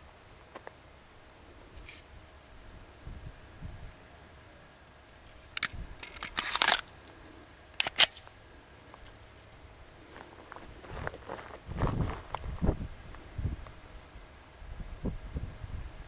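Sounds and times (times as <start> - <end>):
sharp mechanical clicks: 5.6 - 7.0, 7.7 - 8.3.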